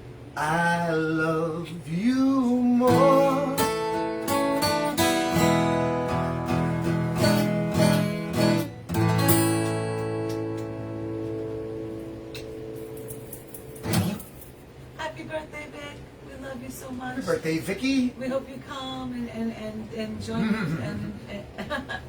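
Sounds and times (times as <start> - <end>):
acoustic guitar strumming: 2.7 - 14.5.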